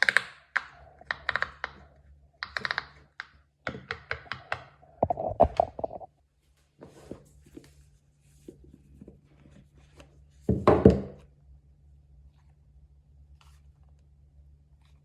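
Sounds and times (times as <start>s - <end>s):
plastic toys clicking and popping: 0.0s - 5.9s.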